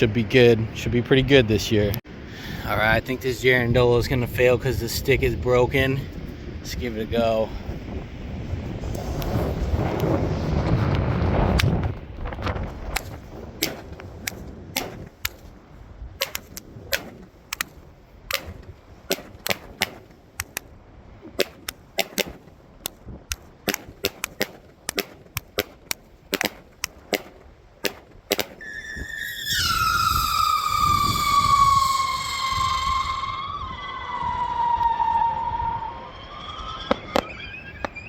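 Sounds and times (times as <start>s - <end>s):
fireworks crackling: 12.6s - 15.5s, 16.2s - 20.6s, 21.3s - 33.2s
high whistling tone: 28.6s - 38.0s.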